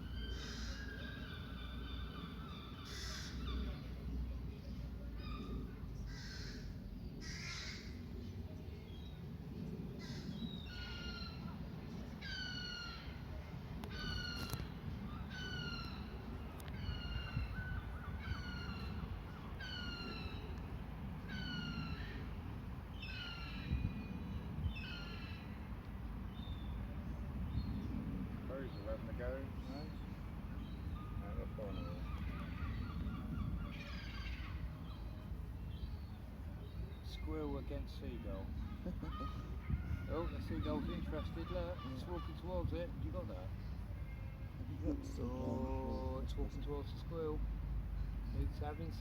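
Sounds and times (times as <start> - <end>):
crows cawing: 0.3 - 1.0, 2.8 - 3.6, 6.1 - 8.0, 10.0 - 11.2, 38.8 - 42.6.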